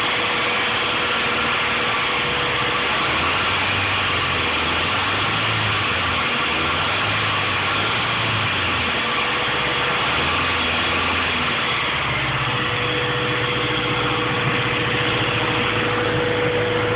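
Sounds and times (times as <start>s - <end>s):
engine idling: 0.0s - 16.9s
thin steady whine: 0.0s - 16.9s.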